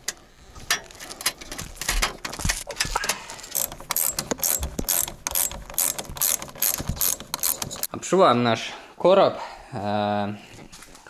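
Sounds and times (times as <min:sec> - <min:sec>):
ratchet wrench clicking: 0:00.0 - 0:07.9.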